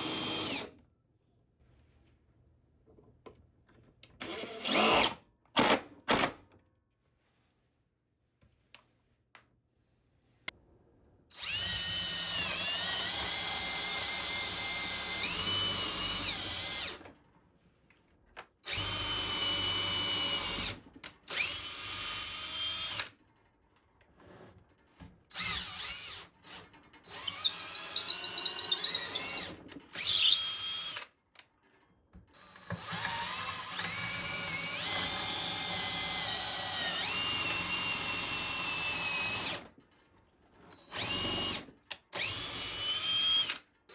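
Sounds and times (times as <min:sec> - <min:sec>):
power drill running in spurts: 0:00.0 - 0:00.7, 0:04.2 - 0:06.3, 0:11.4 - 0:17.0, 0:18.7 - 0:23.1, 0:25.3 - 0:31.1, 0:32.4 - 0:39.7, 0:40.8 - 0:43.6.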